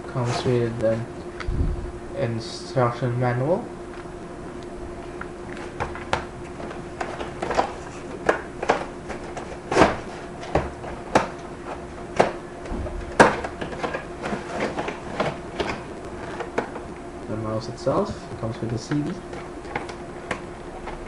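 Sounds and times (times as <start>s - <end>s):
packaging clicks and knocks: 5.8s - 11.4s, 12.2s - 16.8s.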